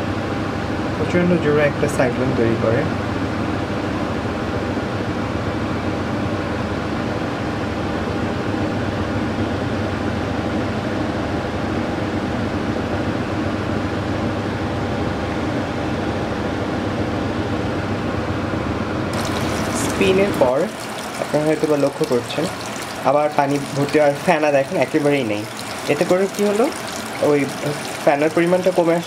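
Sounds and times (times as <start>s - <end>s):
washing machine drum spinning: 19.1s - 29.0s.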